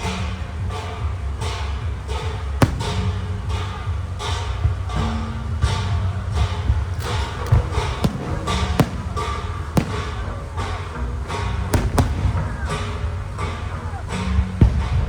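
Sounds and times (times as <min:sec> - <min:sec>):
steady low rumble: 0:01.1 - 0:15.0
fireworks bursting with sharp bangs: 0:01.4 - 0:14.9.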